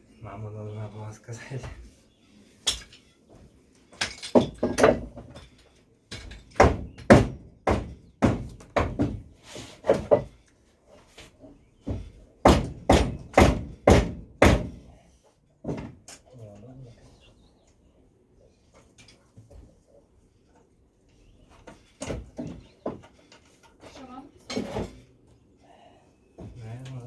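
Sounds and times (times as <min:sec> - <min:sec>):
hard knocks: 0:06.1 - 0:09.3, 0:11.8 - 0:14.9.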